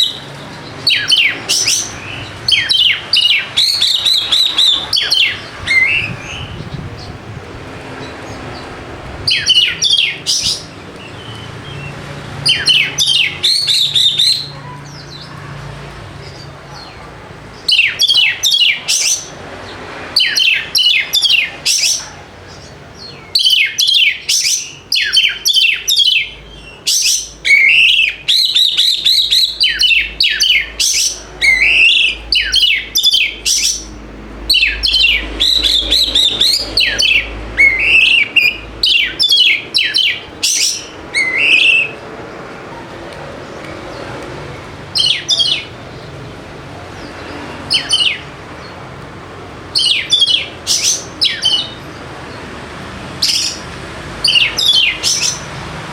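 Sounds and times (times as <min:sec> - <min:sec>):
bird singing whistled phrases: 0:00.9 - 0:06.6, 0:09.2 - 0:11.9, 0:23.2 - 0:33.9, 0:34.5 - 0:42.0, 0:45.0 - 0:45.7, 0:49.8 - 0:51.8.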